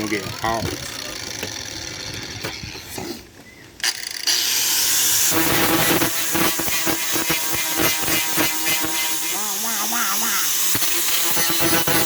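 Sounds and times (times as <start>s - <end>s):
grinder grinding steel: 3.8s - 12.0s.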